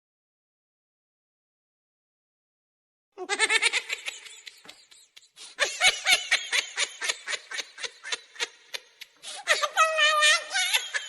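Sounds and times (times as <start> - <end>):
high-pitched laughter: 3.2 - 11.0.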